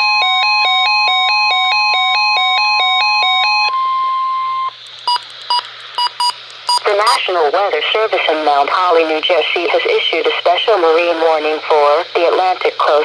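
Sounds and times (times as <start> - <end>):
steady warning tone: 0.0 - 9.8
short beeps: 3.5 - 7.2
radio hiss: 5.7 - 13.0.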